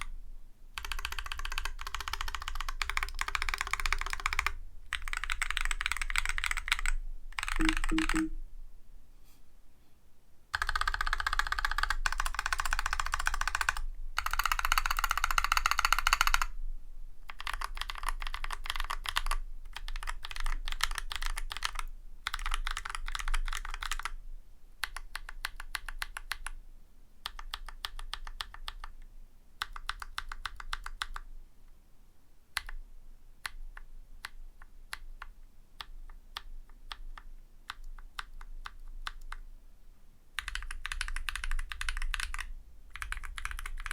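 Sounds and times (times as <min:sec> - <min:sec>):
mechanical keyboard typing: 0:00.8 - 0:08.3, 0:10.6 - 0:16.5, 0:17.3 - 0:24.2, 0:24.8 - 0:26.6, 0:27.2 - 0:28.9, 0:29.6 - 0:31.3, 0:33.5 - 0:39.4, 0:40.4 - 0:43.9.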